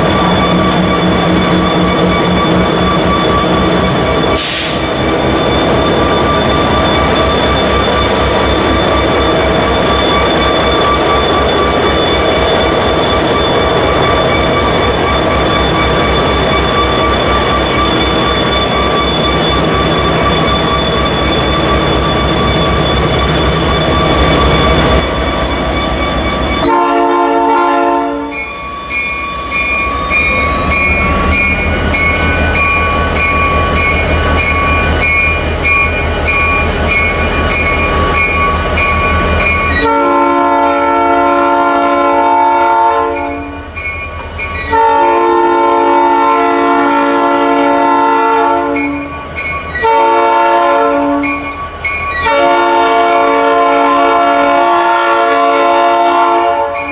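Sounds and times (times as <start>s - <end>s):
locomotive rumbling: 0.0s - 54.8s
train horn blasts: 26.6s - 28.4s, 39.8s - 43.5s, 44.7s - 49.0s, 49.8s - 51.4s, 52.2s - 56.9s.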